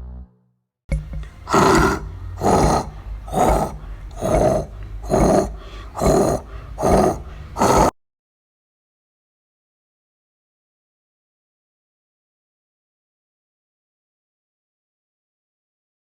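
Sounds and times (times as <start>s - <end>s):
monster rasping breathy voice: 1.3s - 8.0s.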